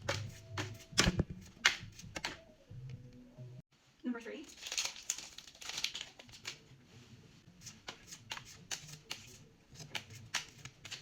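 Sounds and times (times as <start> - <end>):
cards rustling: 4.5 - 6.7, 7.6 - 11.0
cards flicked with crisp snaps: 7.8 - 11.0.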